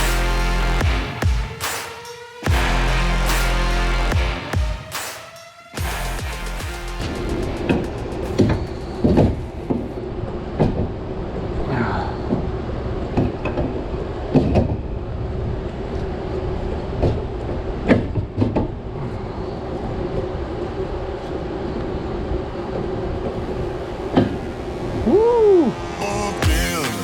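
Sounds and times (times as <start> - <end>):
machine hum: 21.6 - 27.0.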